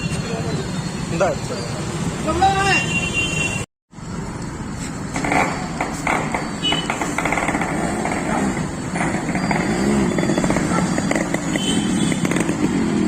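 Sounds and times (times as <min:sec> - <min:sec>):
two-stroke motorcycle engine revving: 0:05.1 - 0:13.0.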